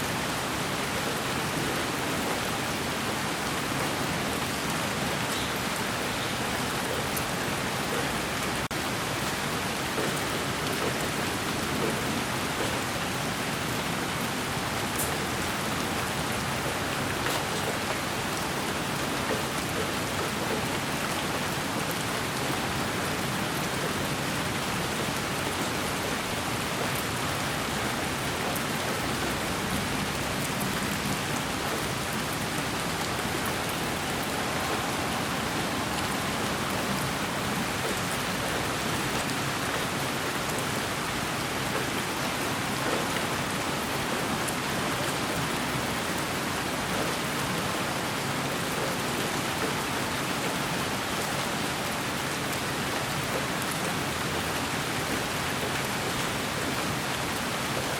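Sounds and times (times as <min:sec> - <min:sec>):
steady rain hiss: 0:00.0 - 0:57.9
faint raindrop ticks: 0:14.8 - 0:15.6.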